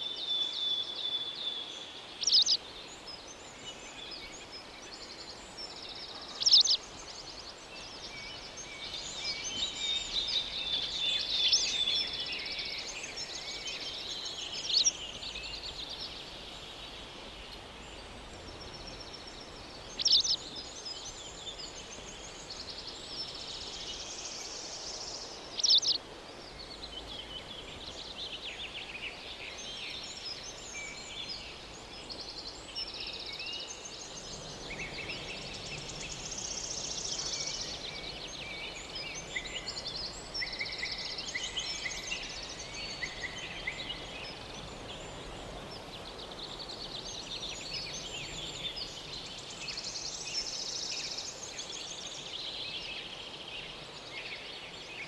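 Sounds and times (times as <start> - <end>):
faint background hiss: 0.0 - 55.0.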